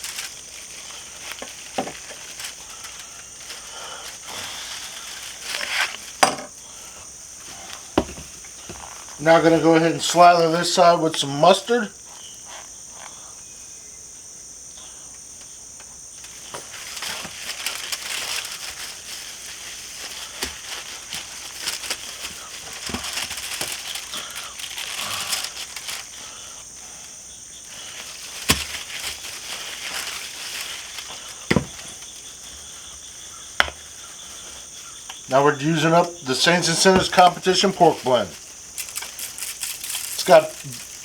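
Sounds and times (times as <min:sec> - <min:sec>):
wet crackling and rustling: 0:00.0 - 0:06.3, 0:16.2 - 0:41.0
crickets chirring: 0:00.0 - 0:41.0.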